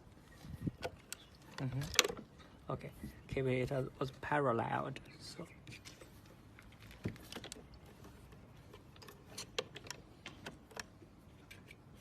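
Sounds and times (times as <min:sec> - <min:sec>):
light clicks of plastic parts: 0:00.7 - 0:02.6, 0:05.6 - 0:12.0.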